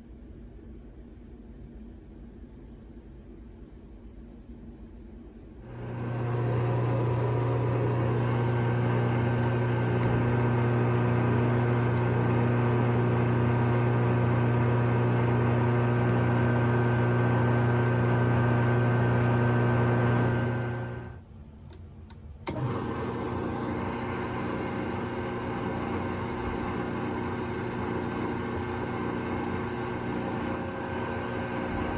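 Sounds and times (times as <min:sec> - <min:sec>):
lathe motor humming: 0:05.7 - 0:21.2, 0:22.5 - 0:31.9.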